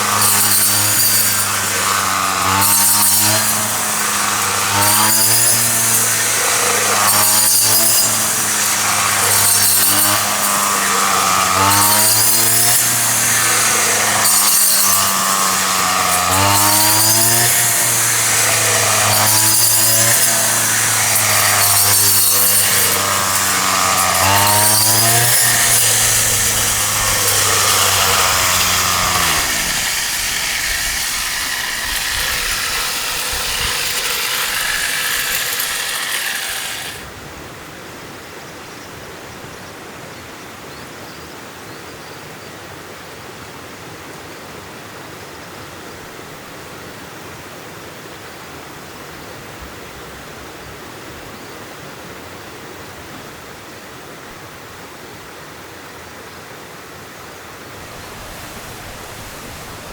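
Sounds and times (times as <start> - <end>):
loud rasping noise: 0.0 - 37.1
small engine running: 0.0 - 37.2, 57.7 - 59.9.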